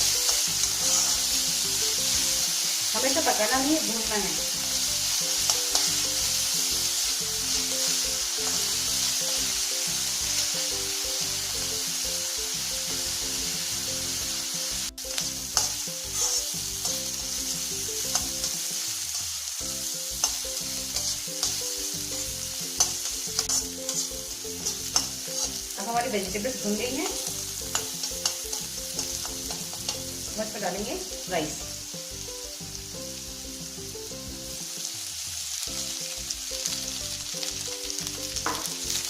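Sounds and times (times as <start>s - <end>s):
spatula scraping a pan: 0.0s - 2.2s, 15.2s - 17.3s, 20.1s - 25.8s
vegetables sizzling in hot oil: 0.0s - 39.0s.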